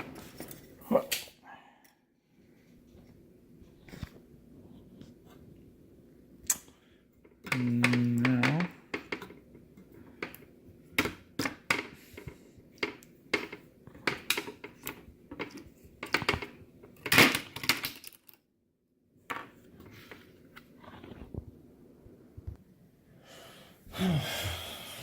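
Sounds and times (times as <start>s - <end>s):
small hard parts clicking and clattering: 7.2s - 18.4s.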